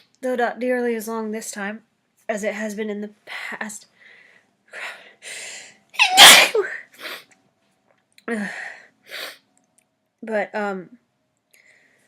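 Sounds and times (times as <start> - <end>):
woman sneezing: 6.0 - 6.9.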